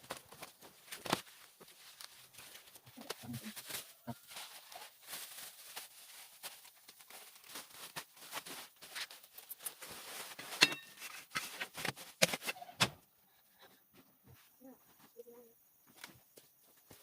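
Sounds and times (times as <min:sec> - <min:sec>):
rustling scraping and knocking: 0:07.6 - 0:12.6.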